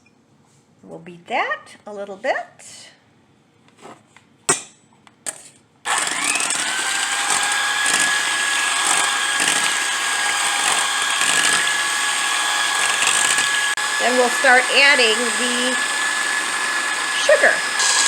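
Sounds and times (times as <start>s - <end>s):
electric hand mixer running: 5.9s - 18.0s.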